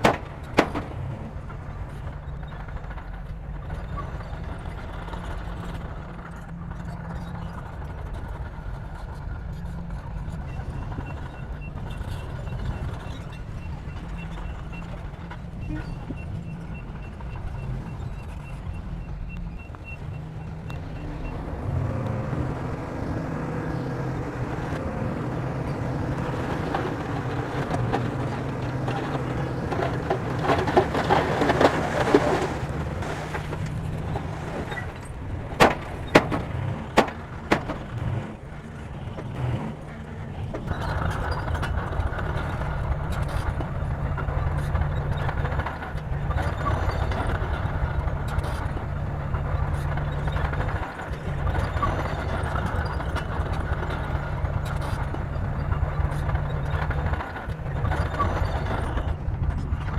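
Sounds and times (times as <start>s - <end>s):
loud metal knocks: 0.0s - 1.3s
bulldozer engine running: 0.0s - 59.9s.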